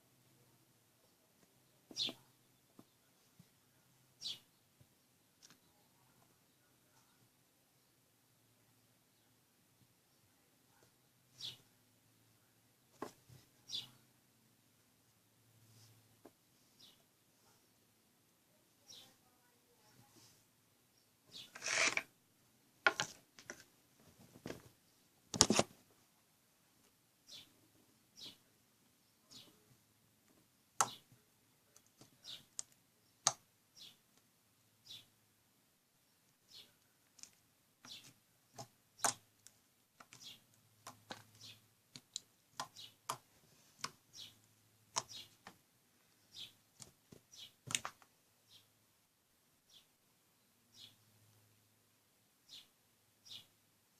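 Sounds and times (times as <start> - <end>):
sharp clicks and snaps: 31.7 - 33.4.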